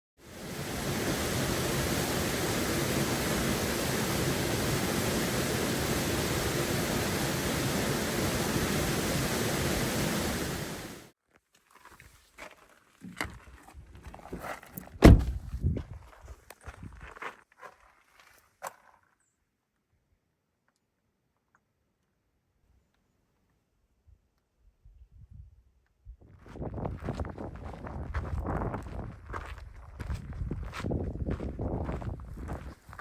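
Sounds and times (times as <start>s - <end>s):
waterfall rushing: 0.2s - 11.1s
footsteps on dirt trail: 11.3s - 19.2s, 26.2s - 33.0s
loud thump: 15.0s - 15.6s.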